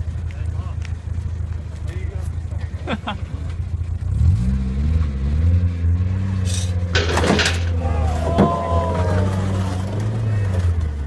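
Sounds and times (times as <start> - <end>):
vehicle engine running: 0.0 - 11.0.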